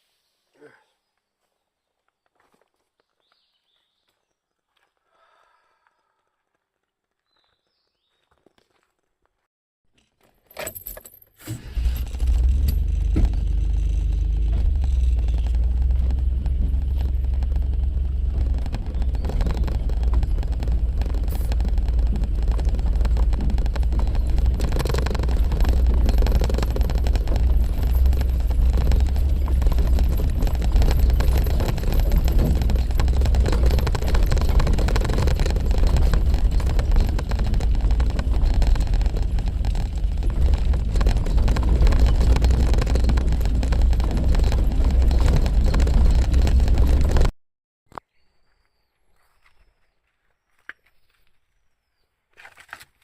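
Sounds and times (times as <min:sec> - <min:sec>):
road noise: 0:11.5 - 0:47.3
car engine running: 0:11.7 - 0:47.3.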